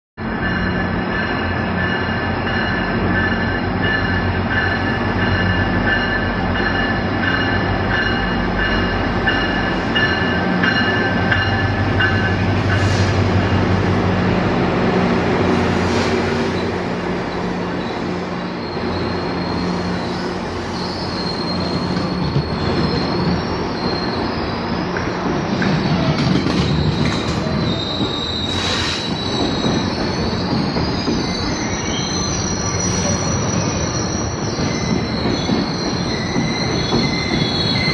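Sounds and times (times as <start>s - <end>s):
train rumbling on rails: 0.2s - 37.9s
wheel squeal: 15.5s - 37.9s.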